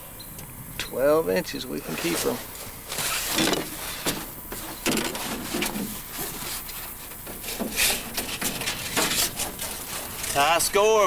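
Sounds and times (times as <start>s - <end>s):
objects knocking and rubbing: 1.9s - 10.4s.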